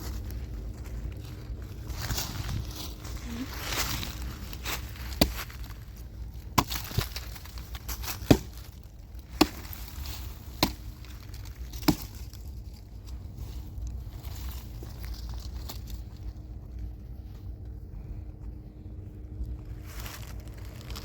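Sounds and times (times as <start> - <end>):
axe chopping wood: 5.1 - 5.6, 6.5 - 7.2, 7.9 - 9.9, 10.5 - 11.0, 11.7 - 12.3.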